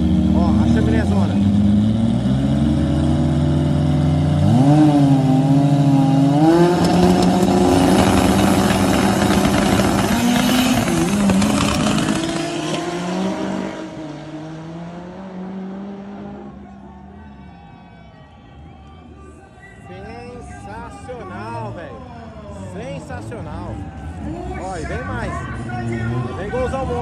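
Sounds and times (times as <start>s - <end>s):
drag car engine revving and accelerating: 0.0s - 16.5s.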